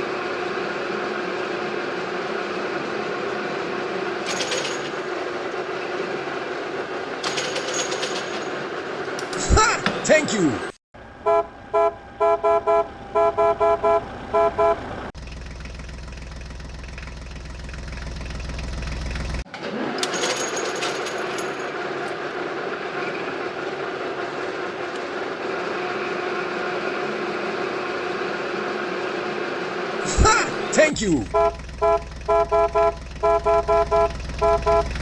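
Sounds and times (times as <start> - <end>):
engine running: 0.0 - 35.0
vehicle horn beeps: 11.2 - 14.9, 31.2 - 35.0.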